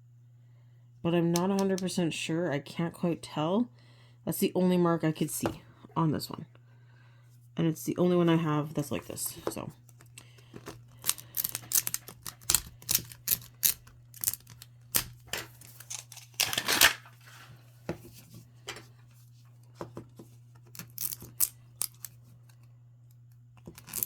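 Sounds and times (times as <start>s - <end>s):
low steady hum: 0.0s - 24.0s
plastic balls rattling: 10.6s - 14.6s, 20.8s - 22.1s
plastic balls clicking together: 10.9s - 15.1s.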